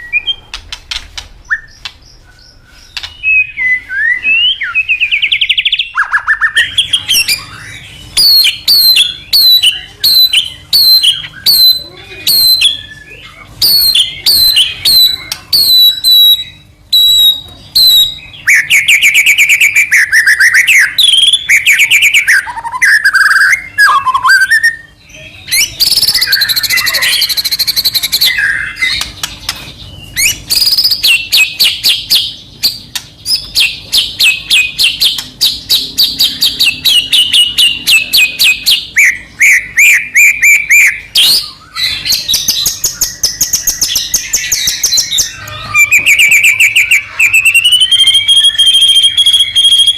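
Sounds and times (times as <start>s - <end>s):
bird singing whistled phrases: 1.4s - 1.9s, 2.9s - 29.1s, 30.0s - 49.9s.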